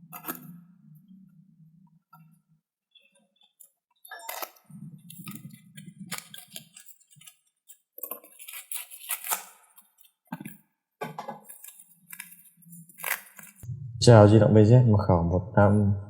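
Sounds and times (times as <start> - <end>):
cardboard parcel rustling and crackling: 4.4 - 10.2.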